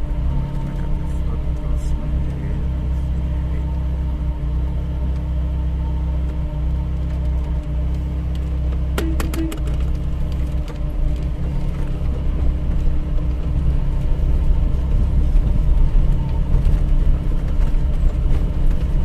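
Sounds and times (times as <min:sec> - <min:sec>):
constant droning tone: 0:00.0 - 0:19.0
traffic engine rumble: 0:00.0 - 0:19.0.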